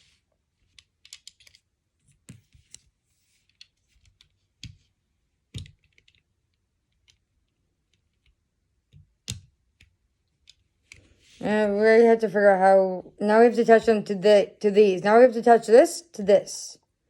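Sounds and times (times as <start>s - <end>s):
plastic bricks clicking: 0.7s - 1.6s.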